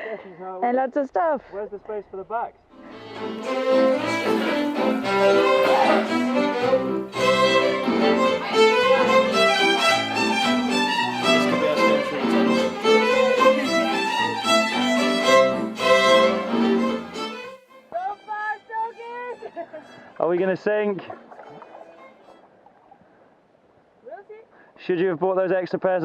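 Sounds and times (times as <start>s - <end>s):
fiddle music: 2.7s - 22.7s.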